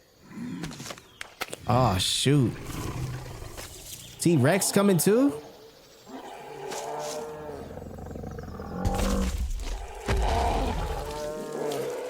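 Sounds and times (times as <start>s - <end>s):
dinosaurs roaring and growling: 6.1s - 12.0s.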